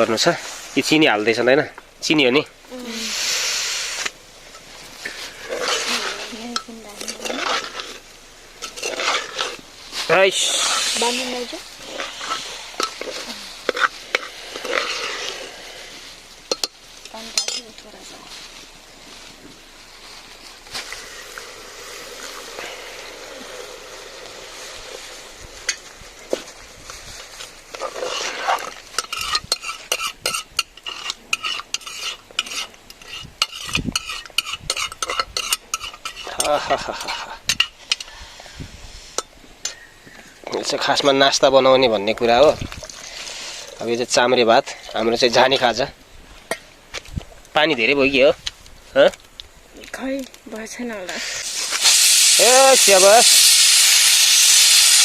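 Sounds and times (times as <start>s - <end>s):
rice sizzling in oil: 0.0s - 39.8s, 40.4s - 46.5s, 47.6s - 55.0s
spoon scraping rice: 5.1s - 8.0s, 8.6s - 9.6s, 10.4s - 16.8s, 27.7s - 38.0s.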